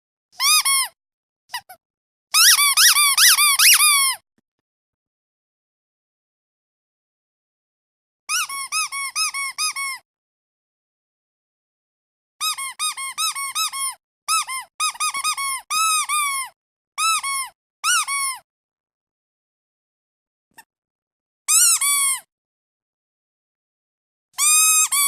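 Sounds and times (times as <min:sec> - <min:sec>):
squeaky dog toy squeaking: 0:00.4 - 0:04.2, 0:08.3 - 0:10.0, 0:12.4 - 0:18.4, 0:21.5 - 0:22.3, 0:24.4 - 0:25.0.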